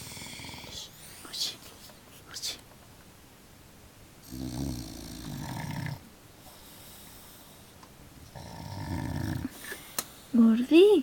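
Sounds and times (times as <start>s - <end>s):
dog snoring: 0.0s - 1.0s, 4.2s - 6.1s, 8.3s - 9.6s.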